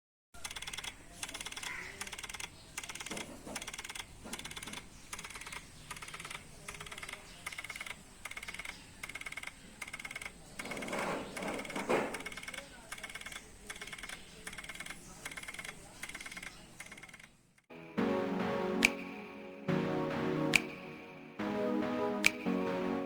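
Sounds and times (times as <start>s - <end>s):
hard drive clicking: 0.4s - 17.4s.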